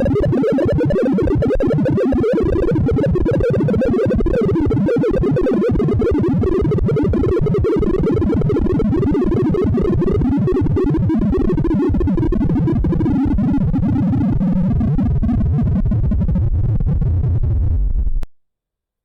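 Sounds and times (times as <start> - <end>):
rapid synthesized tones: 0.0 - 14.2.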